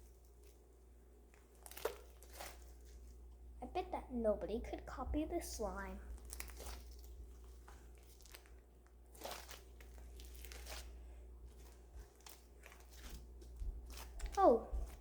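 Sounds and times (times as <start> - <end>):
slime crackling and crunching: 1.3 - 3.2, 6.1 - 15.0.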